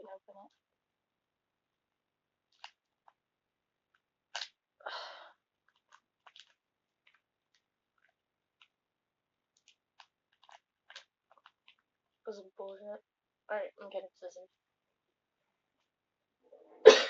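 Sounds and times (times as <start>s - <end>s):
plastic packaging crinkling: 5.7s - 8.7s, 9.6s - 11.9s.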